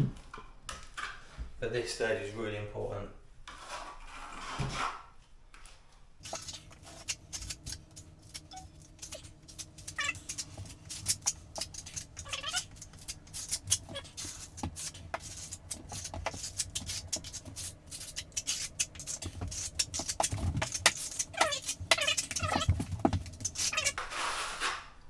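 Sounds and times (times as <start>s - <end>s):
trowel squeaky glides: 6.2s - 24.1s
trowel scraping adhesive: 6.2s - 24.4s.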